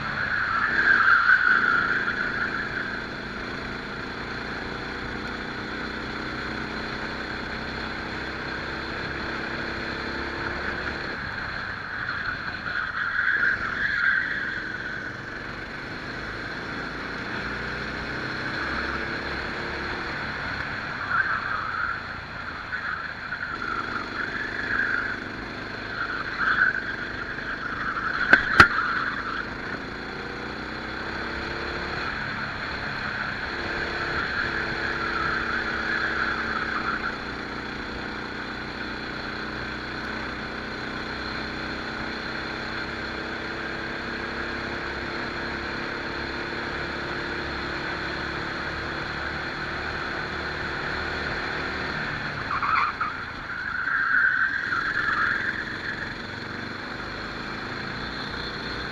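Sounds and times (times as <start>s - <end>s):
kart engine running: 0.0s - 58.9s
sharp knock: 28.3s - 28.8s.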